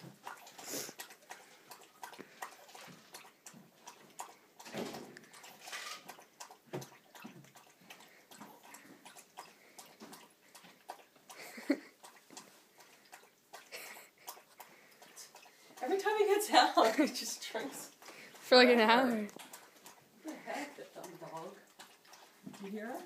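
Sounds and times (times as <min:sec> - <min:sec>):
dog lapping water: 0:00.0 - 0:23.0.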